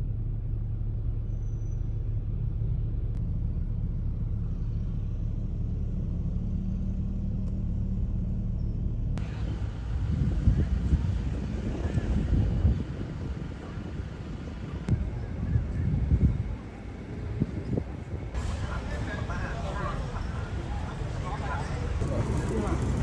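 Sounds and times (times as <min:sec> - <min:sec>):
car engine and road rumble: 0:00.0 - 0:23.0
wind buffeting: 0:09.2 - 0:23.0.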